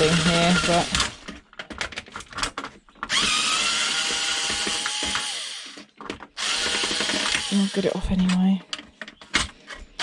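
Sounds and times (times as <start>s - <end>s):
power drill whining: 0.0s - 1.3s, 3.1s - 8.0s.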